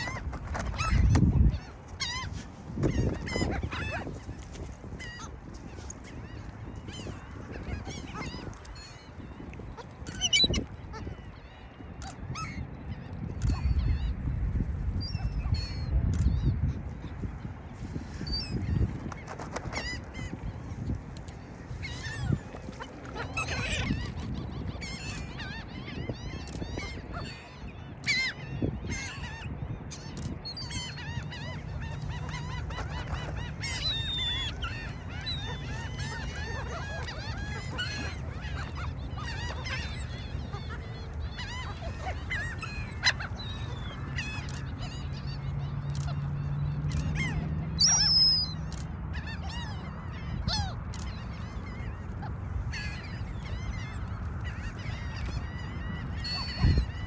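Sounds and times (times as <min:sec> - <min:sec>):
gulls calling: 0:00.0 - 0:17.2, 0:17.9 - 0:57.0
steady low rumble: 0:12.4 - 0:19.0.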